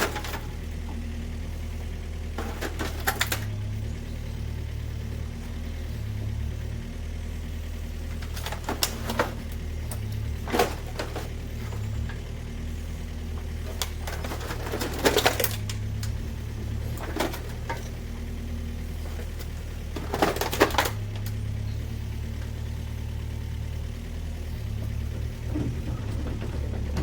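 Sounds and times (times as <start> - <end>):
metallic knocks and rattles: 24.8 - 27.0.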